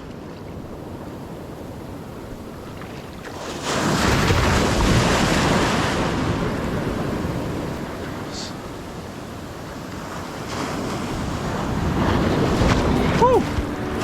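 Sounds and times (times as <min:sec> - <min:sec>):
surf breaking on beach: 0:01.4 - 0:14.0
wind buffeting microphone: 0:03.4 - 0:14.0.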